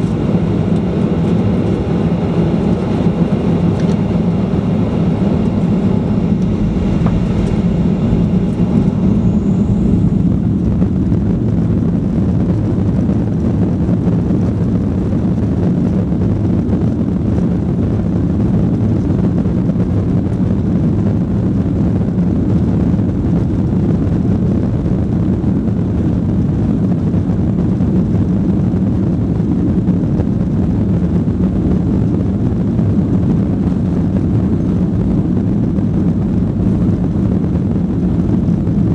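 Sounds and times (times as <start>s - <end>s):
faint high whine: 0.0s - 13.6s
jet engines rumbling: 0.0s - 38.9s.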